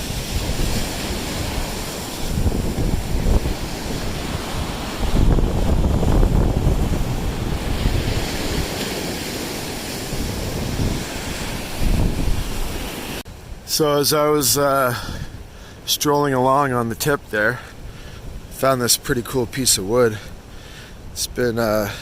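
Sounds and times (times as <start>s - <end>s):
wind buffeting microphone: 0.0s - 13.6s, 15.0s - 15.6s
waves washing onto sand: 0.0s - 22.0s.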